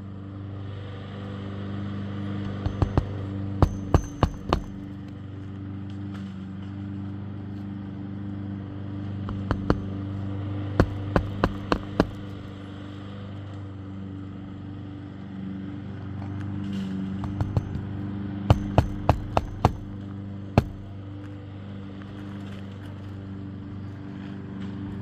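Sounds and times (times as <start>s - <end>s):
nails being hammered: 2.5s - 5.1s, 9.3s - 10.2s, 10.8s - 12.7s, 17.2s - 21.1s.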